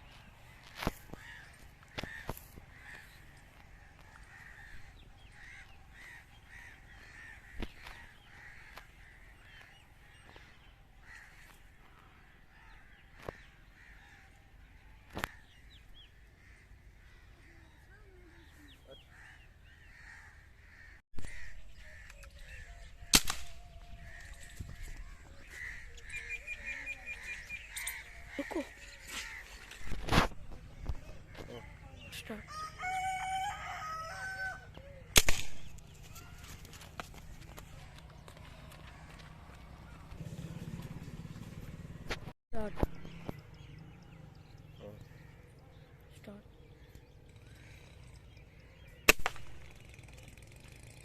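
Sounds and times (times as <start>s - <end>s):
crows cawing: 0.5s - 23.2s, 23.9s - 30.1s, 30.8s - 40.2s, 45.0s - 46.1s, 46.8s - 48.1s
loud sharp crack: 23.1s - 23.6s, 35.1s - 35.8s, 49.1s - 49.8s.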